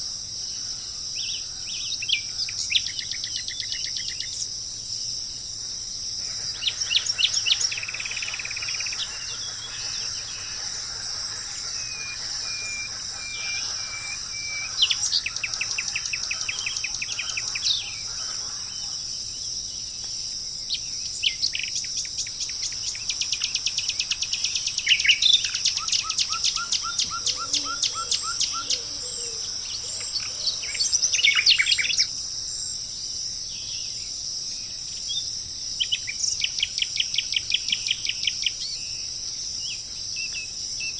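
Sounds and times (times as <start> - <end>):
high-pitched insect chorus: 22.3 - 32.1
songbirds singing: 22.3 - 32.1.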